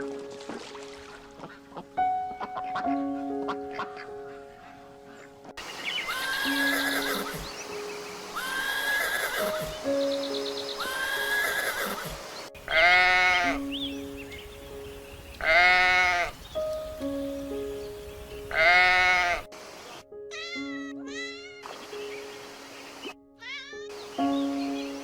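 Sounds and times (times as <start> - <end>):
background music: 0.0 - 25.0
animal calls: 5.9 - 7.6, 8.3 - 9.9, 10.7 - 13.6, 15.4 - 16.4, 18.5 - 19.4.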